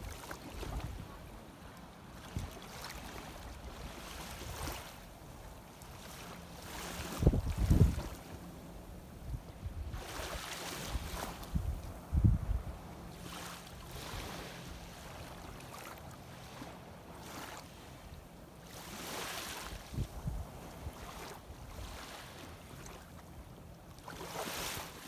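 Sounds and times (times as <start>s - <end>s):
sea water sloshing: 0.0s - 8.5s, 9.8s - 11.7s, 12.8s - 25.0s
wind buffeting microphone: 7.0s - 8.2s, 9.1s - 12.9s, 19.8s - 21.1s.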